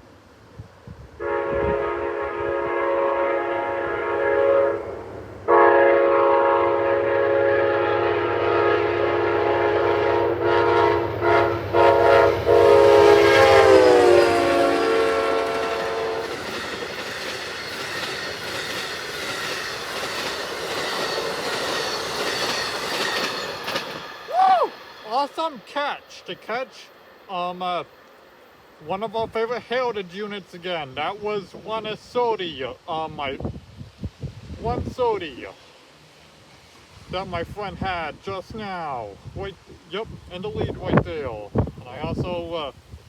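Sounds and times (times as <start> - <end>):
locomotive air horn: 1.2 - 16.5
train wheels clicking over rail joints: 13.4 - 28.3.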